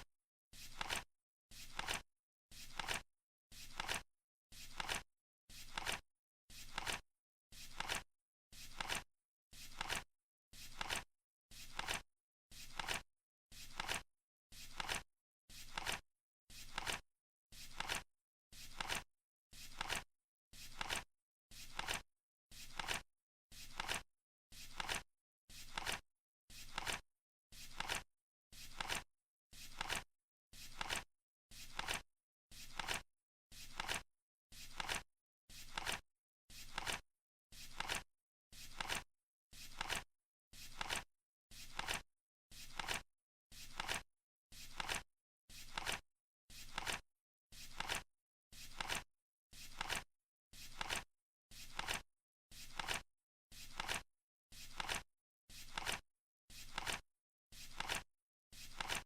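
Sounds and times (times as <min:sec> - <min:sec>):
flip clock papery flap: 0:00.7 - 0:01.1, 0:01.7 - 0:02.0, 0:02.7 - 0:03.0, 0:03.7 - 0:04.0, 0:05.7 - 0:06.0, 0:06.7 - 0:07.0, 0:08.7 - 0:09.0, 0:09.7 - 0:10.0, 0:10.7 - 0:11.0, 0:15.7 - 0:16.0, 0:19.7 - 0:20.0, 0:25.7 - 0:26.0, 0:28.7 - 0:29.0, 0:29.7 - 0:30.0, 0:30.7 - 0:31.0, 0:31.7 - 0:32.0, 0:32.7 - 0:33.0, 0:35.7 - 0:36.0, 0:36.7 - 0:37.0, 0:38.7 - 0:39.0, 0:39.7 - 0:40.0, 0:40.7 - 0:41.0, 0:41.7 - 0:42.0, 0:42.7 - 0:43.0, 0:45.7 - 0:46.0, 0:46.7 - 0:47.0, 0:48.7 - 0:49.0, 0:49.7 - 0:50.0, 0:50.7 - 0:51.0, 0:51.7 - 0:52.0, 0:52.7 - 0:53.0, 0:53.7 - 0:54.0, 0:54.7 - 0:55.0, 0:55.7 - 0:56.0, 0:56.7 - 0:57.0, 0:57.7 - 0:58.0, 0:58.7 - 0:59.0.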